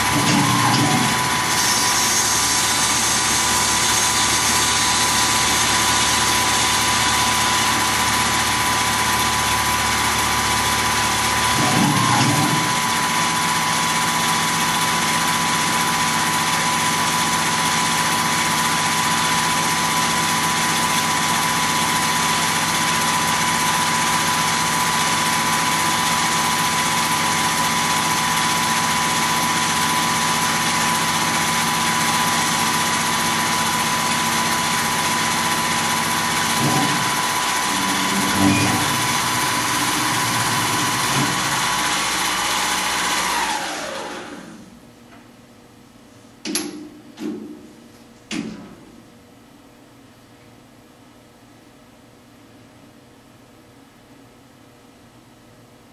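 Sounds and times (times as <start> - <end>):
milling machine humming and whining: 0.0 - 44.7.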